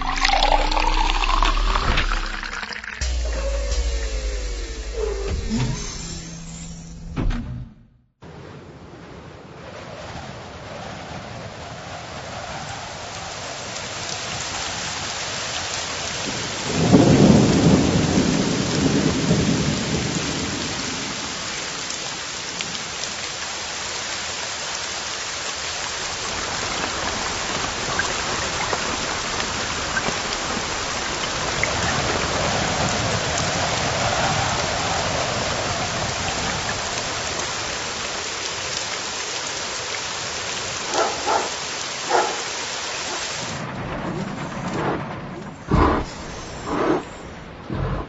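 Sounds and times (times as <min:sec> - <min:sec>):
steady rain: 0:00.0 - 0:06.4, 0:08.2 - 0:48.0
thunder rumbling: 0:00.0 - 0:07.3, 0:16.2 - 0:21.1, 0:43.4 - 0:48.0.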